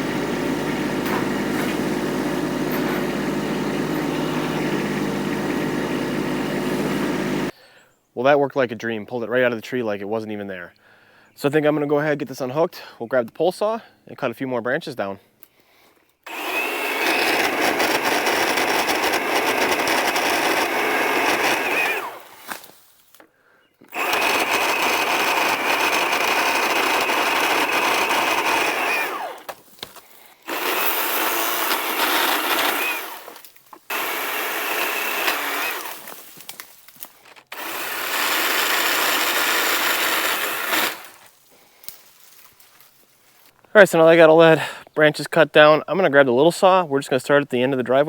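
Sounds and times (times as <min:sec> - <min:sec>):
electric pole saw whining: 0:00.0 - 0:07.5, 0:16.3 - 0:22.6, 0:23.8 - 0:29.6, 0:30.5 - 0:36.5, 0:37.5 - 0:41.3.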